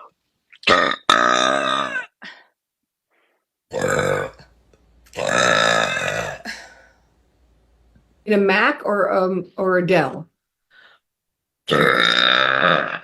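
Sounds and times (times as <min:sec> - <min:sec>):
woman belching loudly: 0:00.6 - 0:02.2, 0:03.7 - 0:04.5, 0:05.1 - 0:06.6, 0:11.7 - 0:13.0.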